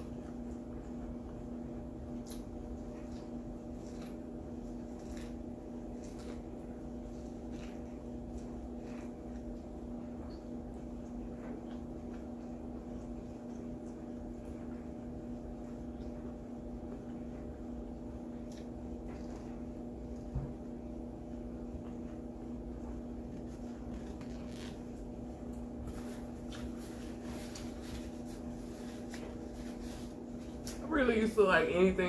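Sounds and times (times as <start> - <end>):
low electrical hum: 0.0 - 32.0
person chewing food: 2.0 - 14.3, 18.3 - 20.3.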